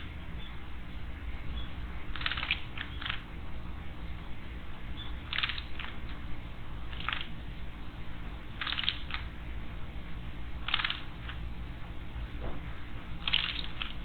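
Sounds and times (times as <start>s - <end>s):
small birds scratchy sounds: 2.1s - 3.3s, 8.6s - 9.3s.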